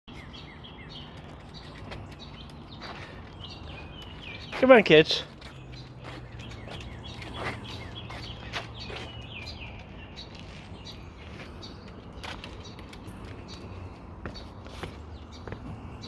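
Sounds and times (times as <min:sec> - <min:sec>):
birds chirping: 0:00.1 - 0:16.0.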